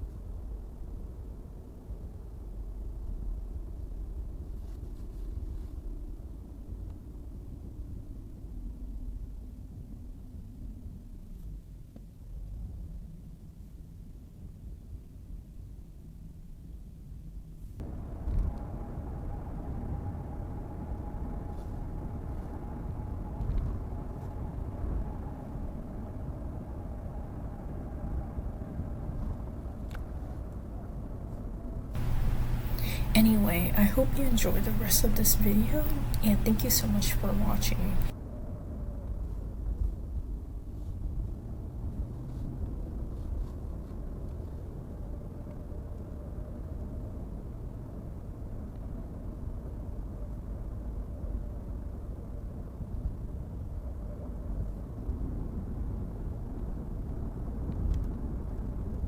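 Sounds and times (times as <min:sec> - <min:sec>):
faint steady whine: 0:17.8 - 0:29.2, 0:32.0 - 0:38.1
car tyres and engine rumble: 0:32.0 - 0:38.1.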